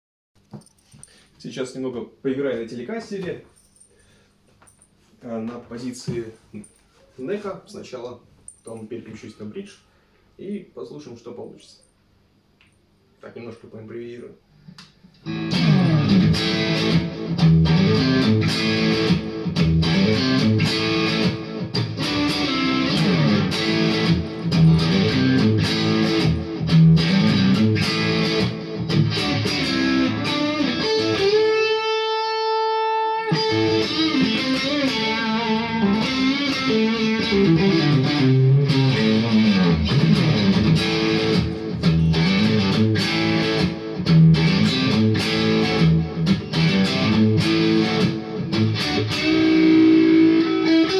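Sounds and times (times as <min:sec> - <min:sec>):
electric guitar lead: 0:15.2 - 0:50.9.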